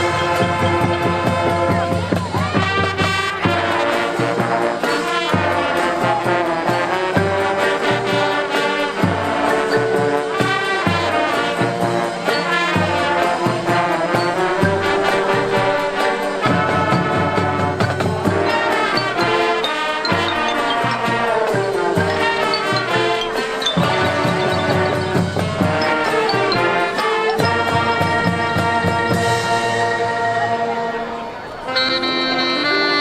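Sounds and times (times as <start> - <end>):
low drums beating: 0.0 - 8.4, 12.8 - 30.4
brass horns playing: 0.0 - 33.0.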